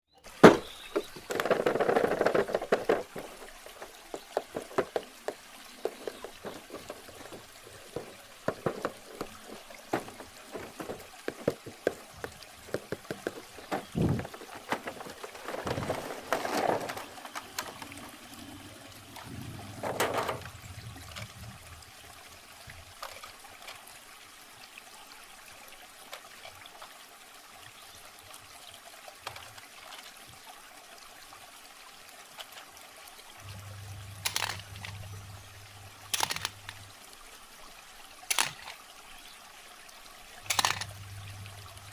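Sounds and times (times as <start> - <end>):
stream water trickling: 0.1 - 41.9
plastic toy packaging rustling: 0.5 - 12.0, 12.7 - 18.1, 34.2 - 35.1, 36.1 - 36.8, 38.3 - 38.8, 40.5 - 41.0.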